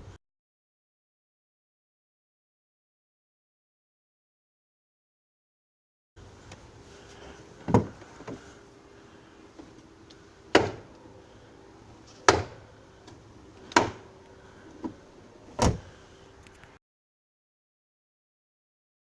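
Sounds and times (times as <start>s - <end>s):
car door clunking open: 7.6s - 8.5s, 13.6s - 14.1s, 14.8s - 16.0s.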